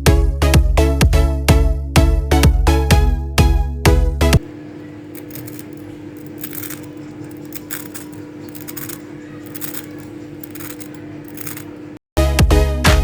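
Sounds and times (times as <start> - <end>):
metallic clinks of kitchen utensils: 5.1 - 11.9.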